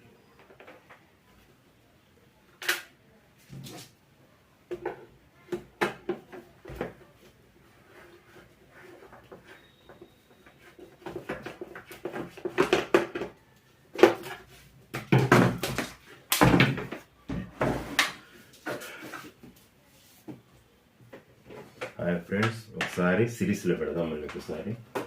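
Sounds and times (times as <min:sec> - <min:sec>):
hard objects knocking and clattering: 0:09.2 - 0:18.9.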